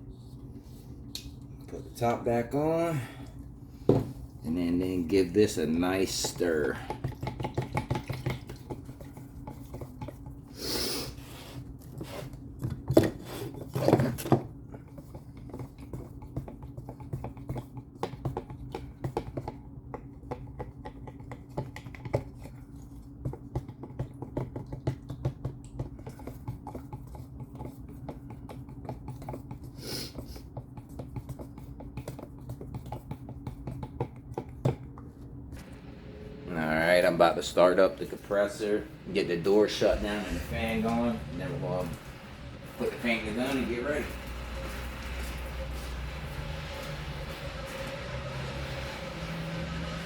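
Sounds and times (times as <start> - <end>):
stir stick scraping and tapping cup: 5.8 - 10.5, 13.0 - 35.0, 39.2 - 50.0.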